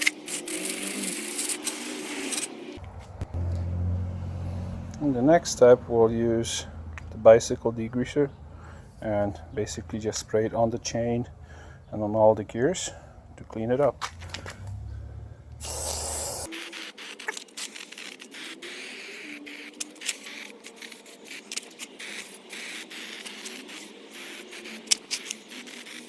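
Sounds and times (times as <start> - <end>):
spray hissing: 0.0 - 2.7, 15.6 - 26.0.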